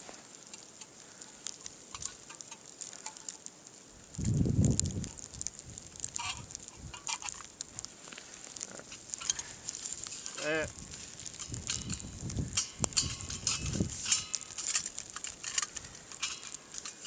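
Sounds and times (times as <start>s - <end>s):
camping gear rustling and clicking: 0.0s - 3.6s, 6.0s - 17.0s
steady hiss: 0.0s - 17.0s.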